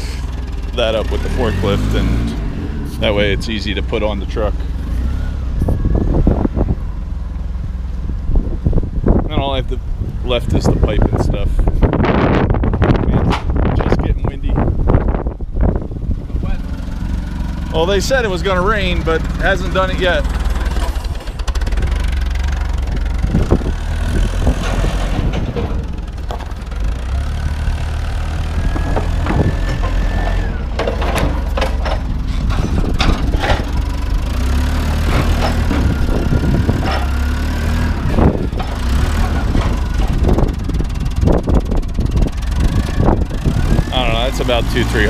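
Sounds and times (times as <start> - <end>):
vehicle engine running: 0.0 - 45.0
clanks and knocks: 13.2 - 13.7, 20.2 - 27.2, 28.4 - 43.6.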